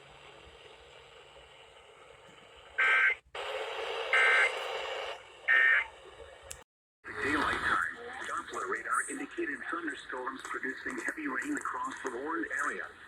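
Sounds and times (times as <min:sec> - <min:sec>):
radio static hiss: 0:02.4 - 0:06.4, 0:07.1 - 0:13.0.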